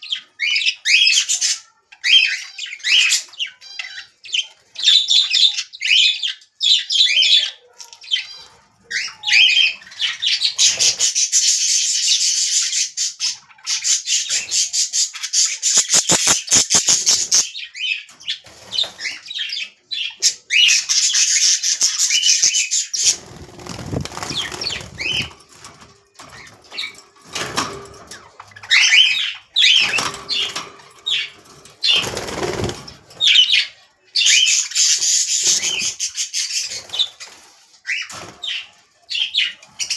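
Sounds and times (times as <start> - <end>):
budgies chattering and chirping: 0.0 - 39.9
wings flapping: 15.7 - 17.4, 23.0 - 25.8, 31.9 - 33.1.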